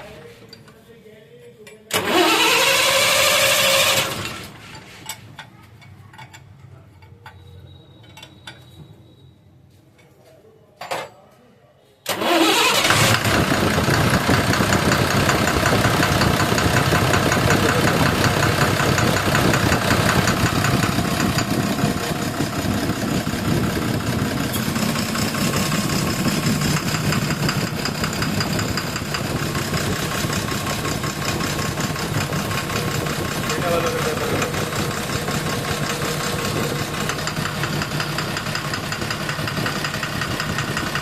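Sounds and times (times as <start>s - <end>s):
car engine starting and idling: 1.9s - 4.8s, 12.1s - 41.0s.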